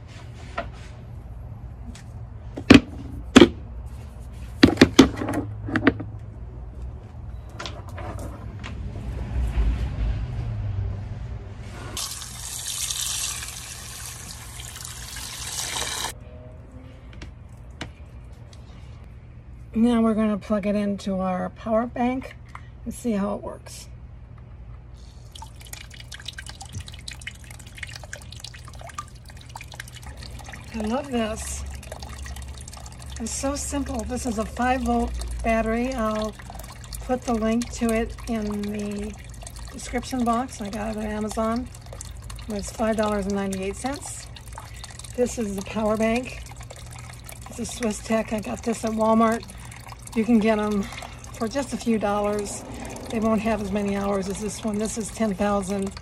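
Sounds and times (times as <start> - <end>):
low steady hum: 0.0 - 56.0
water splashing and dripping: 12.0 - 16.2, 25.2 - 56.0.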